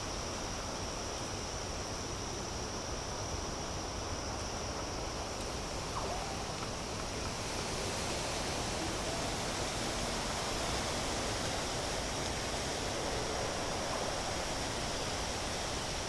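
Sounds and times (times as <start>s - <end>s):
high-pitched insect drone: 5.5s - 16.0s.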